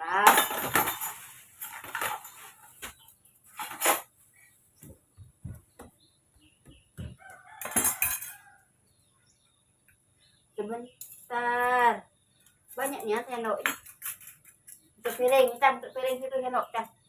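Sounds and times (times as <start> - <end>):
metal spoons and dishes clinking: 7.5 - 8.5
dishes clattering: 7.6 - 8.4.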